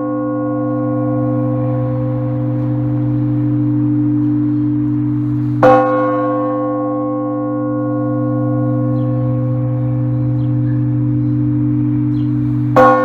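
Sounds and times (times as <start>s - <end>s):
low steady bell hum: 0.0s - 13.0s
bell struck: 8.0s - 13.0s.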